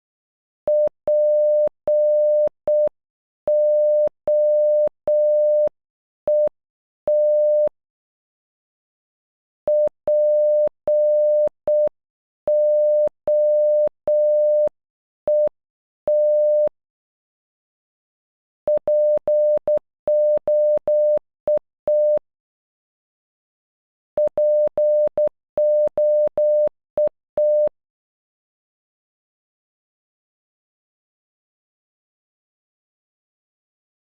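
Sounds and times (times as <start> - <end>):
morse code beeps: 3.5 - 5.7, 7.1 - 7.7, 9.7 - 11.9, 12.5 - 14.7, 16.1 - 16.7, 18.7 - 22.2, 24.2 - 27.7.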